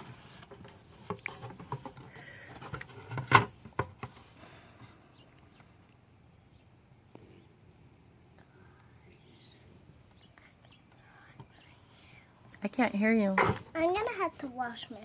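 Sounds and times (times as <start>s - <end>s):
faint room noise: 0.0s - 15.0s.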